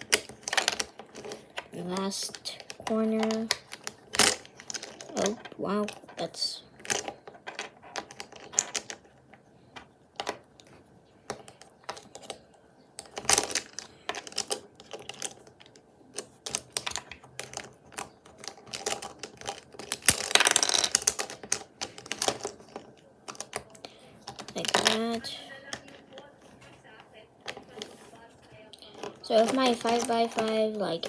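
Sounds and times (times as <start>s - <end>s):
plastic puzzle cube clicking: 0.0s - 9.2s, 13.0s - 26.2s, 28.9s - 31.0s.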